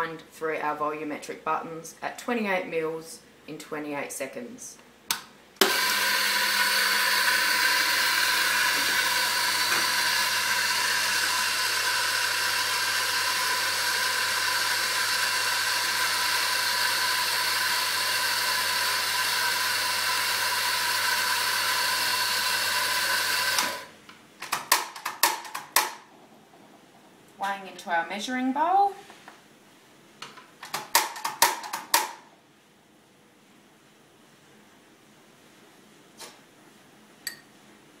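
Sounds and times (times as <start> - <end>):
coffee grinder motor: 5.6 - 23.9.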